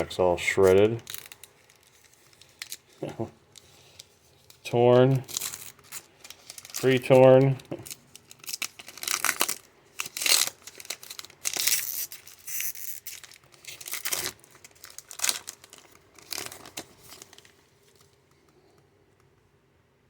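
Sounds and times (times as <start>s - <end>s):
foil wrapper tearing and crinkling: 0.4s - 18.1s.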